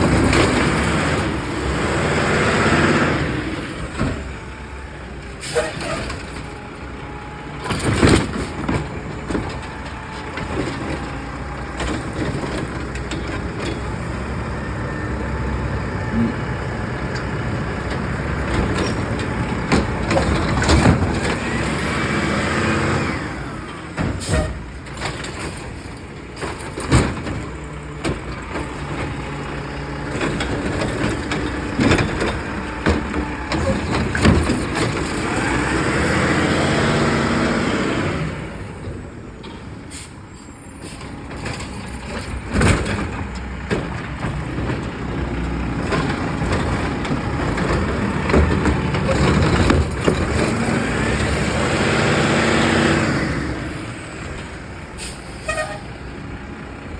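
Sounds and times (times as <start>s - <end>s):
garbage truck engine running: 0.0s - 56.9s
air brakes hissing: 5.3s - 6.2s, 24.1s - 24.7s, 39.8s - 41.3s, 55.0s - 56.0s.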